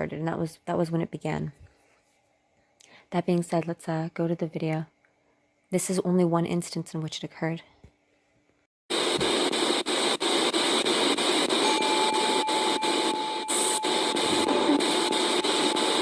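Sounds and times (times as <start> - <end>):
thin steady tone: 11.6 - 16.0.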